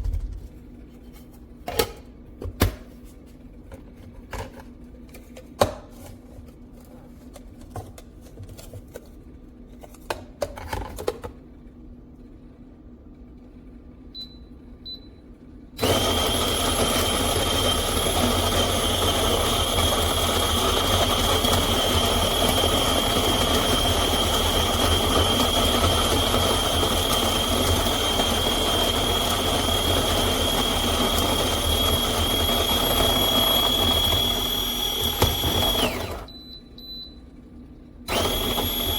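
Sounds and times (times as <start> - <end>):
coffee grinder motor whining: 15.8 - 36.3, 38.1 - 38.9.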